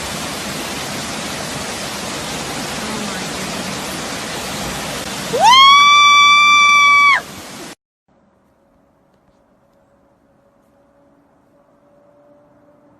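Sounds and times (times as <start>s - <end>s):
falling water rushing: 0.0s - 7.8s.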